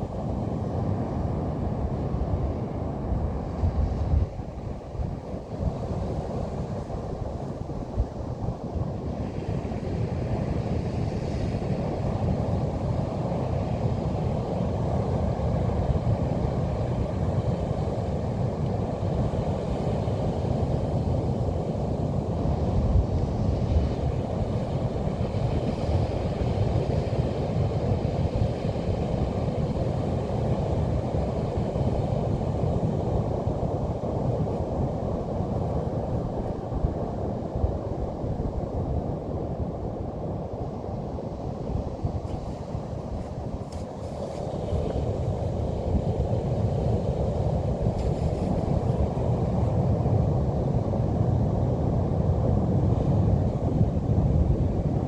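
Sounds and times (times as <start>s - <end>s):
wind buffeting microphone: 0.0s - 14.8s, 21.0s - 55.0s
ocean surf rumbling: 24.0s - 52.2s.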